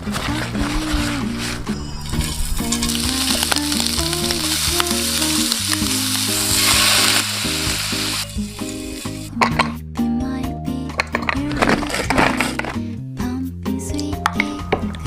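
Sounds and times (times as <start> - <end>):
light background music: 0.0 - 15.0
food sizzling in hot oil: 2.2 - 9.3.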